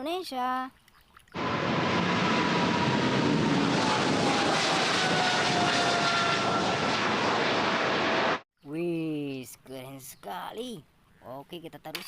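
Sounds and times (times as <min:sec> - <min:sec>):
airplane engine rush: 0:01.4 - 0:08.4.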